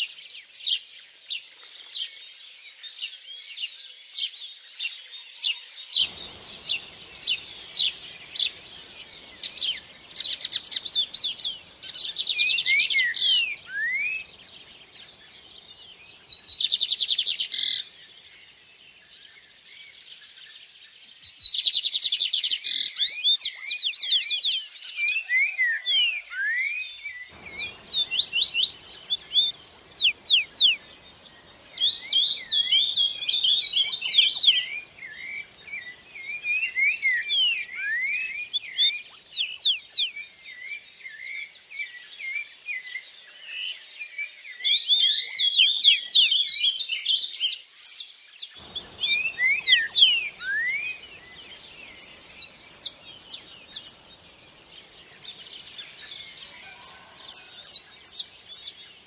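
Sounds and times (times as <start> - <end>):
songbirds singing and chirping: 0.0 - 59.0
faint stream rushing: 5.9 - 18.8, 27.3 - 40.5, 48.5 - 59.0.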